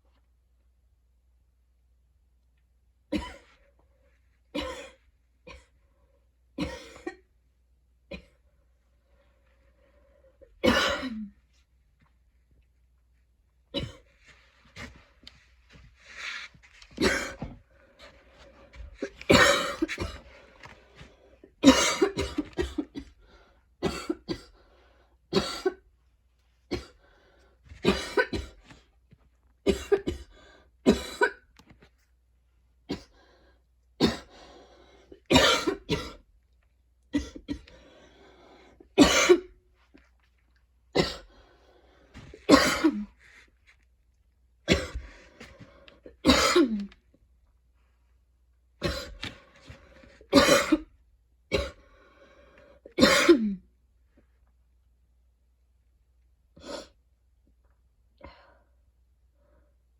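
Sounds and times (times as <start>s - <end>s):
woman coughing harshly: 3.1s - 3.5s, 4.6s - 5.7s, 6.6s - 7.3s, 10.6s - 11.4s, 13.7s - 14.1s, 17.0s - 17.5s, 19.1s - 20.3s, 21.6s - 23.2s, 23.8s - 24.5s, 25.3s - 25.8s, 27.8s - 28.6s, 29.6s - 31.5s, 32.9s - 33.1s, 34.0s - 34.3s, 35.2s - 36.2s, 37.1s - 37.7s, 39.0s - 39.5s, 41.0s - 41.3s, 42.5s - 43.2s, 44.7s - 45.0s, 46.1s - 46.9s, 48.8s - 49.2s, 50.3s - 51.8s, 53.0s - 53.6s.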